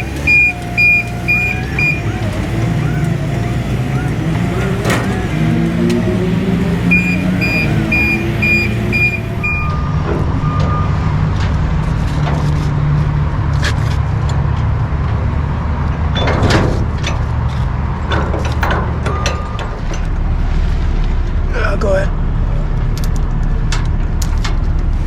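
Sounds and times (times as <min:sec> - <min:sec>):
short high electronic beeps: 0:00.0 - 0:02.0, 0:06.9 - 0:09.9
lower electronic beeps: 0:00.0 - 0:02.2, 0:06.2 - 0:11.1
car engine rumble inside cabin: 0:00.0 - 0:19.0, 0:19.6 - 0:25.0.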